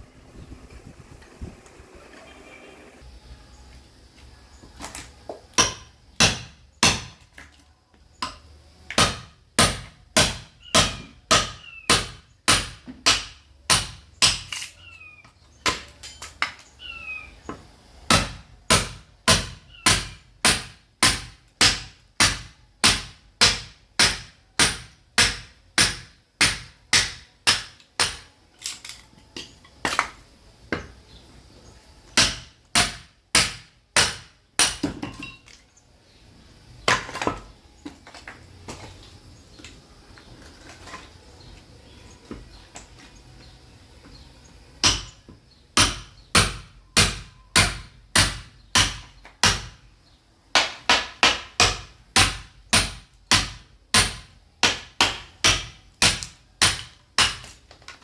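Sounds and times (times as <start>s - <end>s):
sledgehammer striking steel chisel: 8.2s - 14.7s, 50.6s - 57.6s.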